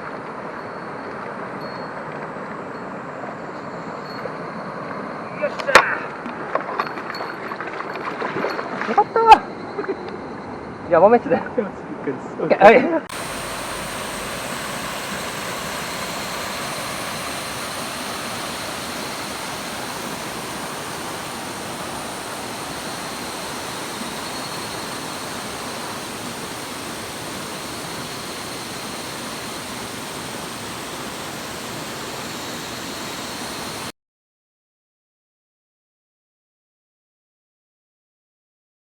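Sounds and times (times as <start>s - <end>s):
stream water rushing over rocks: 5.5s - 9.4s, 13.1s - 33.9s.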